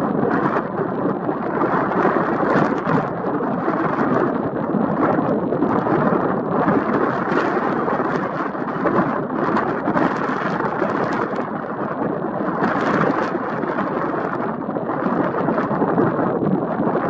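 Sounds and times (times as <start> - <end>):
strong wind on microphone: 0.0 - 17.0.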